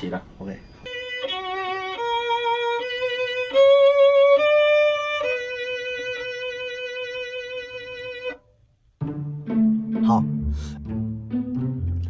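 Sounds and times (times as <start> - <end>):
solo violin melody: 0.9 - 8.4.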